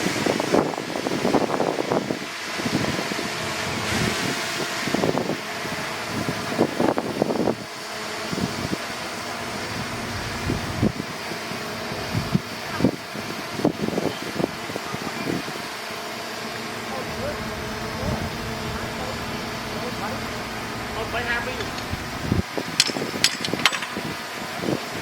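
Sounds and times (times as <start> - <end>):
heavy diesel engine running: 16.3 - 24.2.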